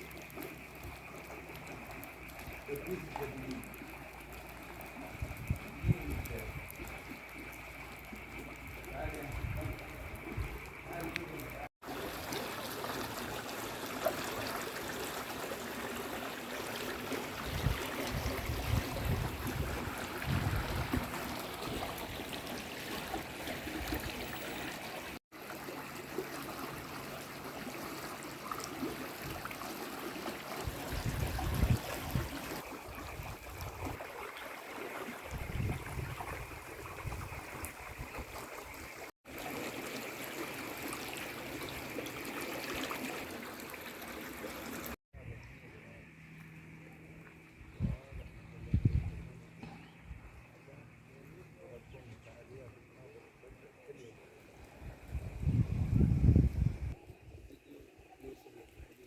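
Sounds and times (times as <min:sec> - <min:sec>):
water running over rocks: 0:00.0 - 0:45.0
low rumbles on microphone: 0:47.6 - 0:50.2, 0:54.8 - 0:57.4.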